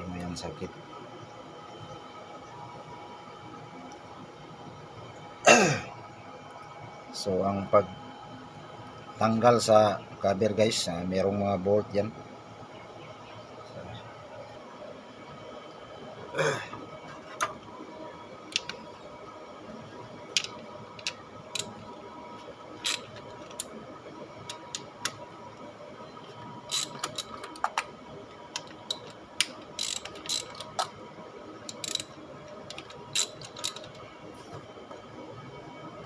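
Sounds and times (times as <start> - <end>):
ratchet wrench clicking: 26.7 - 27.7, 28.6 - 30.8, 31.7 - 32.1, 32.7 - 33.9.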